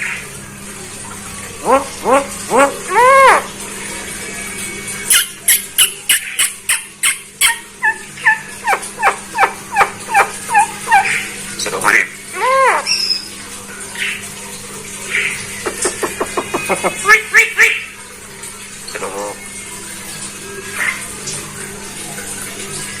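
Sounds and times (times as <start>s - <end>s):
myna whistled calls: 12.8s - 13.4s.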